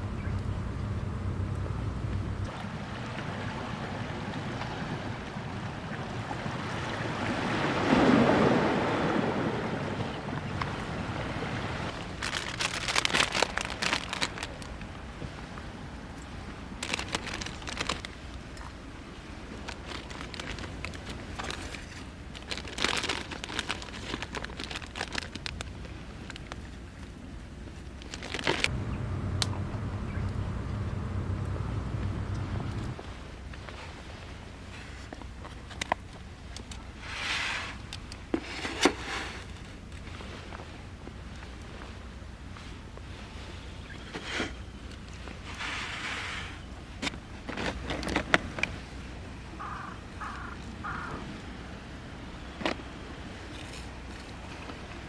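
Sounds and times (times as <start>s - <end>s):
steady low rumble: 0.0s - 5.8s, 28.7s - 33.4s
sea waves washing on shore: 0.0s - 55.0s
crinkling and rustling with clicks: 12.1s - 15.0s, 16.8s - 18.8s, 19.5s - 27.2s, 27.8s - 33.0s, 34.9s - 36.8s, 47.0s - 48.8s.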